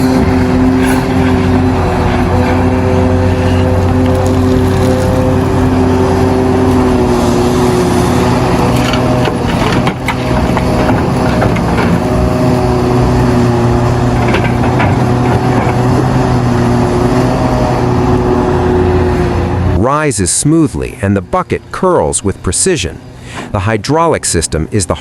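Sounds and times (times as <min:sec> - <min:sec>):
excavator diesel engine: 0:00.0 - 0:25.0
digging clatters: 0:08.1 - 0:16.2.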